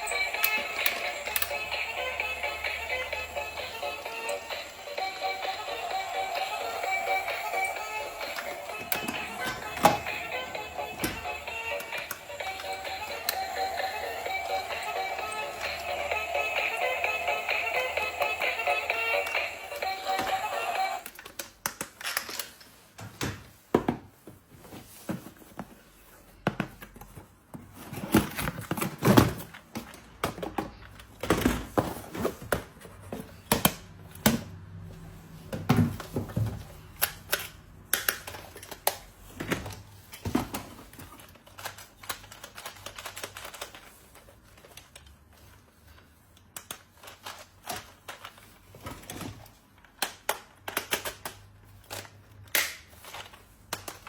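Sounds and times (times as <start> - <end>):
clicks and taps of plastic parts: 21.1 - 22.5, 49.0 - 52.9.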